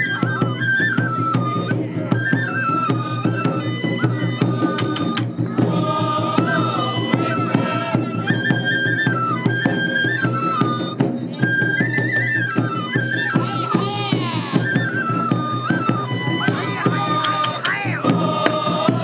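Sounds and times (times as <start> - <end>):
bamboo flute melody: 0.0 - 19.0
drum strikes: 4.5 - 8.2, 16.3 - 19.0.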